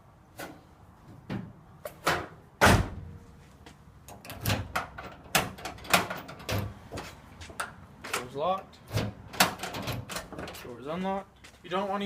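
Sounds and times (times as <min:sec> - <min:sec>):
door lock clicks and clunks: 0:04.1 - 0:06.8, 0:08.9 - 0:10.6.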